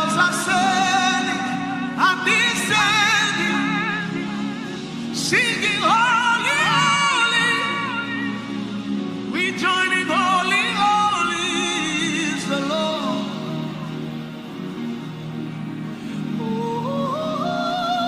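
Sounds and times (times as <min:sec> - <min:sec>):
solo voice singing with vibrato: 0:16.4 - 0:18.0.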